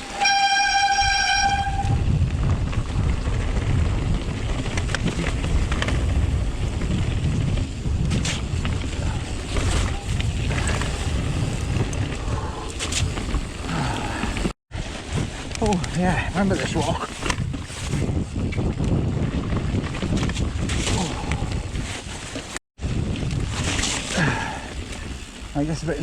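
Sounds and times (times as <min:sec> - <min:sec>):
high squeal: 0:00.0 - 0:02.0
wind on microphone: 0:00.0 - 0:25.4
mountain bike rumbling on rough trail: 0:00.0 - 0:26.0.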